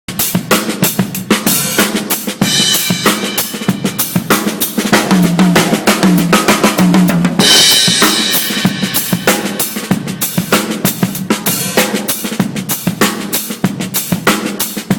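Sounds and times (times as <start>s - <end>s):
drum kit groove: 0.1s - 14.9s.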